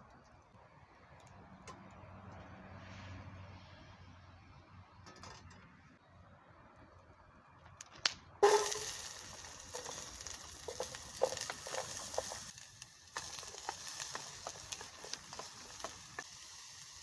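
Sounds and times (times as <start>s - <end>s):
pops and crackles: 7.7s - 17.0s
food sizzling in hot pan: 8.4s - 17.0s.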